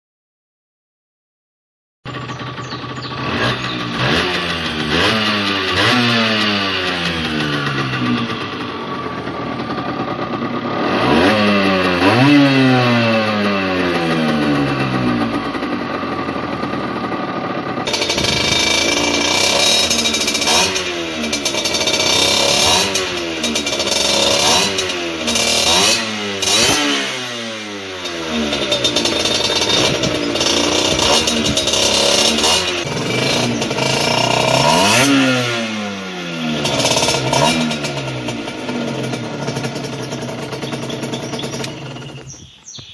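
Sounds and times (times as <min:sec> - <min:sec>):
motorcycle engine revving: 0:02.1 - 0:42.9.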